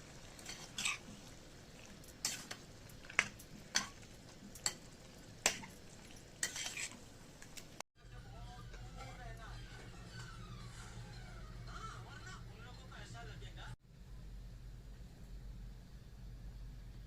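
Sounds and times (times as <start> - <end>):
chicken sizzling in a pan: 0.0 - 7.8
metal spoon scraping a pan: 0.3 - 7.0, 8.6 - 11.0.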